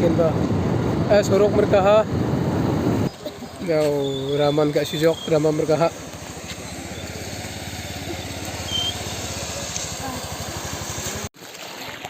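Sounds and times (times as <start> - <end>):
small engine running: 3.1 - 11.3.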